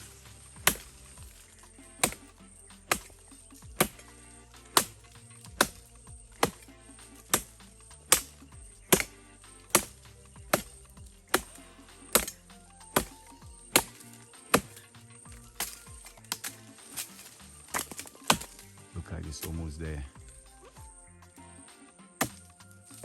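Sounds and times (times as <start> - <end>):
blade chopping into stalk: 0.0 - 1.4, 2.0 - 2.3, 2.9 - 3.2, 4.7 - 6.7, 7.3 - 12.4, 13.0 - 14.8, 15.6 - 18.7, 22.2 - 23.0
quiet music: 0.0 - 23.0.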